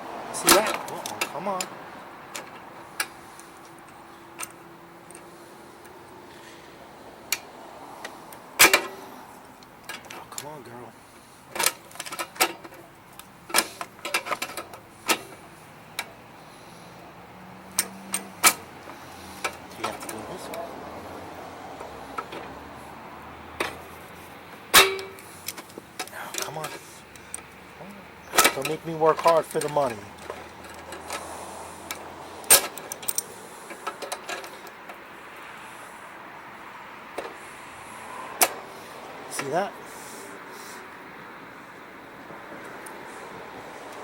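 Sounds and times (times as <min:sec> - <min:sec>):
metallic clicks and clanks: 0:08.6 - 0:09.0, 0:11.5 - 0:16.1, 0:17.6 - 0:20.6, 0:24.7 - 0:27.6, 0:28.3 - 0:31.3, 0:31.9 - 0:35.0.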